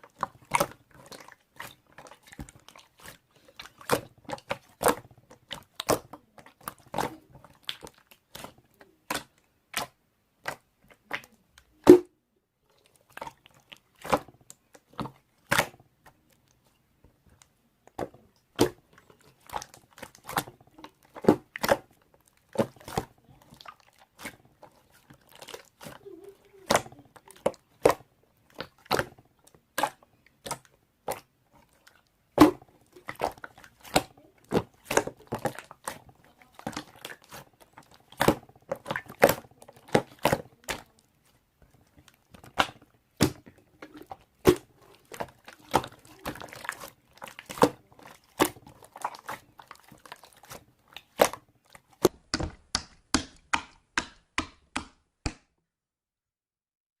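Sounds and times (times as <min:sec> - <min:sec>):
slime making wet pops: 0:00.0 - 0:55.6.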